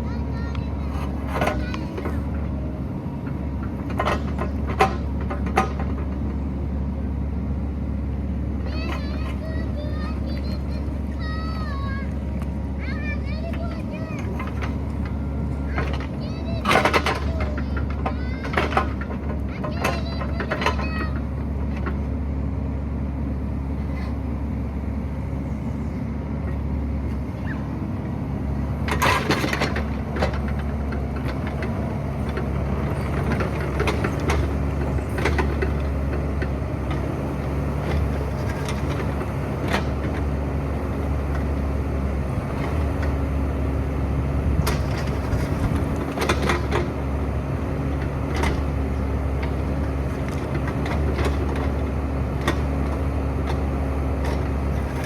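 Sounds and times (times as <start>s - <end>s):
excavator engine running: 0.0s - 55.0s
clanks and scrapes from digging: 0.9s - 2.3s, 28.8s - 40.2s.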